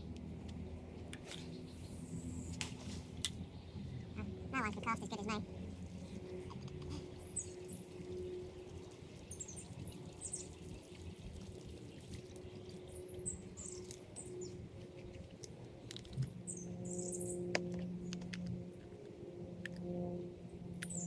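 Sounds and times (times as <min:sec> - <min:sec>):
steady low hum: 0:00.0 - 0:21.0
small birds chirping: 0:06.8 - 0:08.4, 0:09.0 - 0:14.6.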